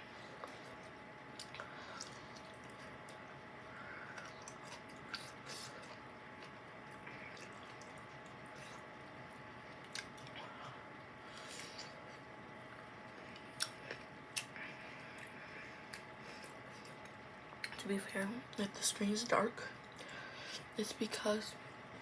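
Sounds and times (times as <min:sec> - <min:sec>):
wet chewing mouth sounds: 0:01.3 - 0:03.2, 0:04.1 - 0:10.4, 0:13.1 - 0:17.8.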